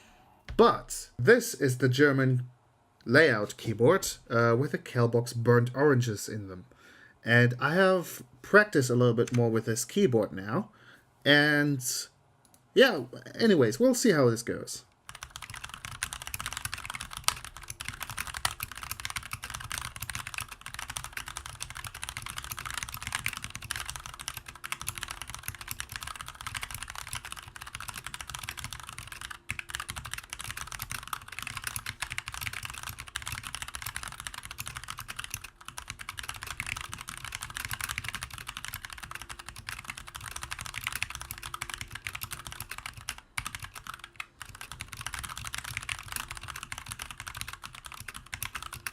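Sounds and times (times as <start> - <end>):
fast mechanical keyboard typing: 15.1 - 48.9.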